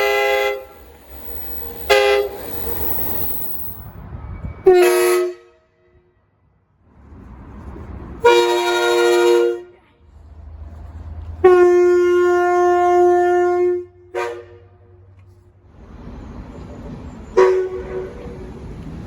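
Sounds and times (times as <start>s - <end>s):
train horn blasts: 0.0s - 2.4s, 4.6s - 5.9s, 8.2s - 9.7s, 11.4s - 14.8s, 17.4s - 18.4s
low train rumble: 0.0s - 19.0s.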